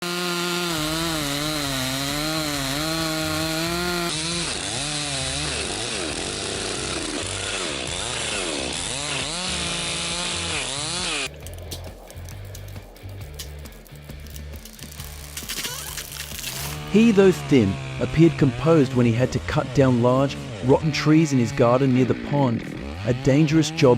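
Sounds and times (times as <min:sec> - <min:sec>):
chainsaw engine revving: 0:00.0 - 0:11.6, 0:14.2 - 0:23.9
scattered clicks: 0:11.3 - 0:16.4.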